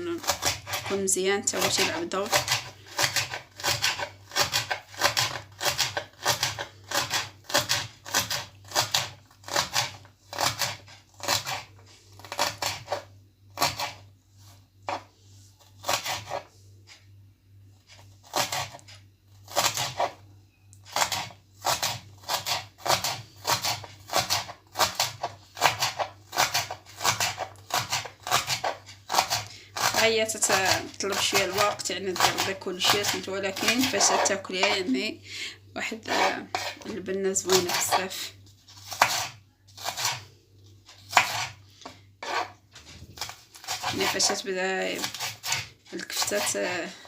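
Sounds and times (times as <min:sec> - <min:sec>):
knife chopping on cutting board: 0:01.6 - 0:11.7, 0:15.8 - 0:16.4, 0:18.3 - 0:18.9, 0:20.9 - 0:34.9, 0:36.1 - 0:38.1, 0:38.8 - 0:40.2, 0:41.1 - 0:41.6.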